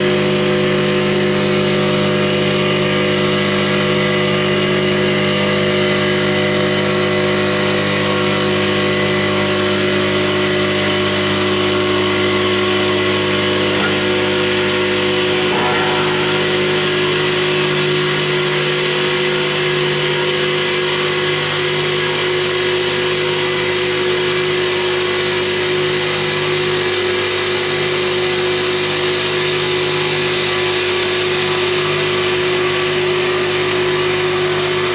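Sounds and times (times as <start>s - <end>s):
polishing machine motor hum: 13.8s - 18.0s
strong hiss: 13.8s - 18.0s.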